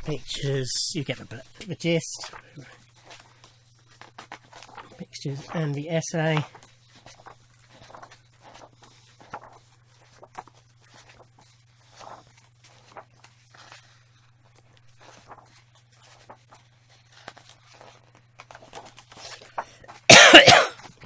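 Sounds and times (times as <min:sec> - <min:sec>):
paper rustling: 0:00.0 - 0:20.1.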